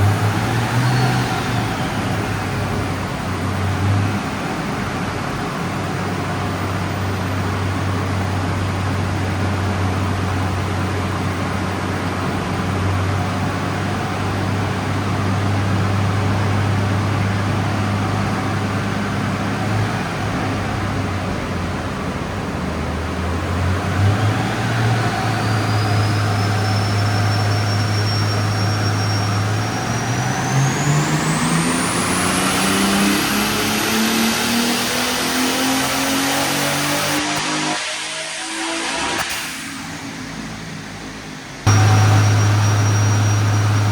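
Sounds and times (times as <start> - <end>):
turbo whine rising in pitch: 0.0 - 4.8, 23.9 - 43.9
car engine accelerating: 0.0 - 43.9.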